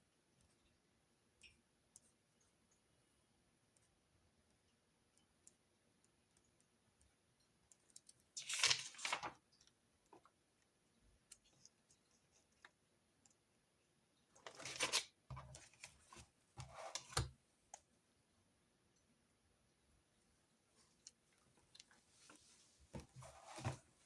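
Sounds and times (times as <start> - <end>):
paper rustling: 8.4 - 9.4, 14.4 - 17.3, 22.2 - 24.0.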